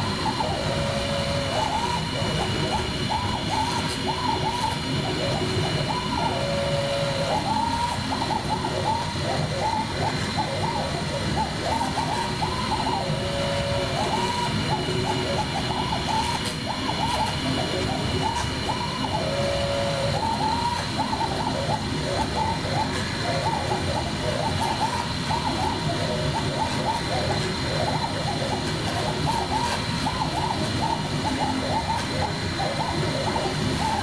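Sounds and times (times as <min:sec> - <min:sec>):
cnc router motors whining: 0:00.0 - 0:34.0
steady machine noise: 0:00.0 - 0:34.0.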